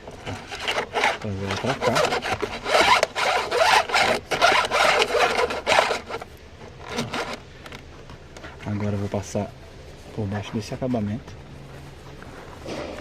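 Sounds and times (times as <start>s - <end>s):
hands scraping plastic trim: 0.0s - 7.4s.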